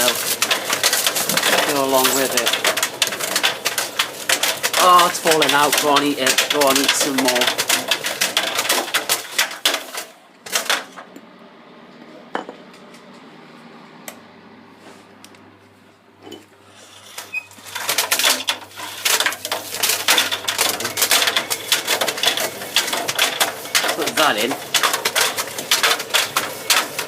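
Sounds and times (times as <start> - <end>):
objects clattering in dryer drum: 0.0 - 11.1, 17.1 - 27.0.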